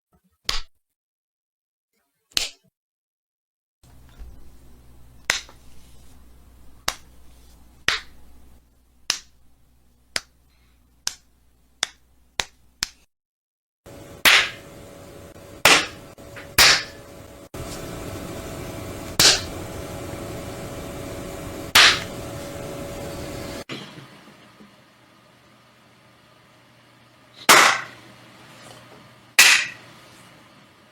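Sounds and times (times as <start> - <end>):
steady background hum: 3.9 - 12.8, 13.9 - 30.9
sharp slaps: 5.2 - 5.6, 6.8 - 7.1, 7.9 - 8.2, 9.1 - 9.4, 10.1 - 10.3, 11.0 - 13.1, 14.2 - 14.6, 15.6 - 16.0, 16.6 - 17.0, 19.2 - 19.5, 21.7 - 22.1, 27.5 - 28.0, 29.4 - 29.8.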